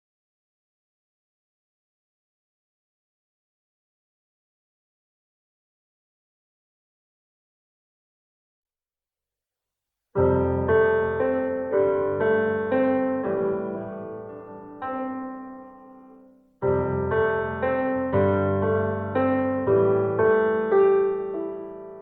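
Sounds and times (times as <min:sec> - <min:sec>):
gentle electronic keyboard melody: 0:10.2 - 0:22.0.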